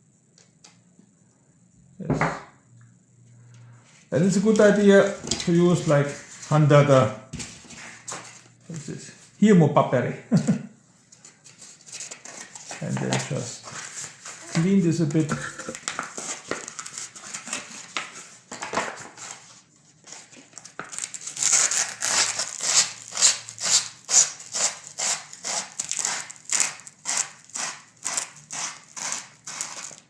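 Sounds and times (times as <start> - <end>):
sandpaper rasping on wood: 21.4 - 30.0.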